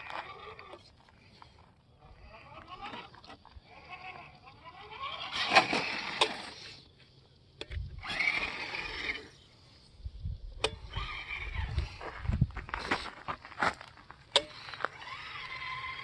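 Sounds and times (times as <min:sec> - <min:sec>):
small electric motor whining: 0:00.0 - 0:06.9, 0:07.7 - 0:10.0, 0:10.6 - 0:12.5, 0:14.2 - 0:16.0.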